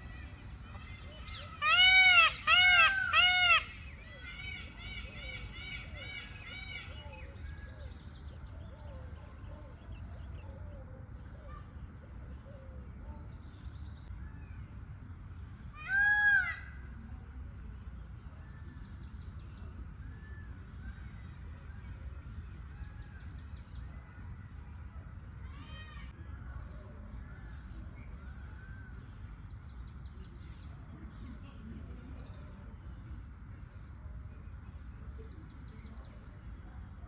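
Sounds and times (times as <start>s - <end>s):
low outdoor background: 0.0s - 37.0s
peacock call: 0.8s - 7.0s.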